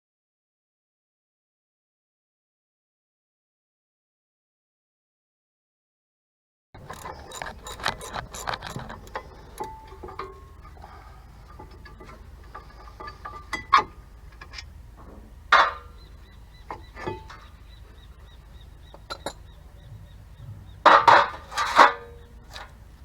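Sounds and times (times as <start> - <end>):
hand tools clinking on metal: 6.8 - 19.8, 20.8 - 22.8
loud metal clanks: 6.8 - 22.8.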